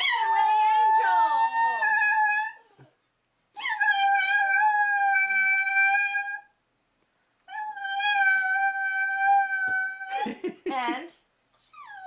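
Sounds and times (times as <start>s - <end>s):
dog howling: 0.0s - 2.6s, 3.6s - 6.5s, 7.5s - 10.2s.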